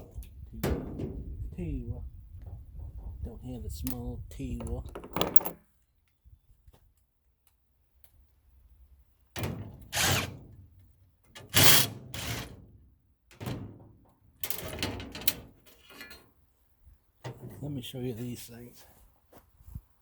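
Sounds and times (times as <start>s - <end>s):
sheet metal scraping and clunking: 9.4s - 10.6s, 11.4s - 12.8s, 13.4s - 16.3s.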